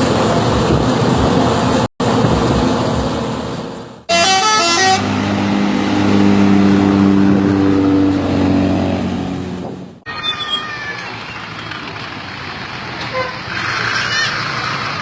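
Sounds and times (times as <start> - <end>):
bus engine: 0.0 - 15.0
bus horn notes: 4.1 - 5.2, 13.0 - 13.5
long multi-note horn blast: 4.1 - 5.4.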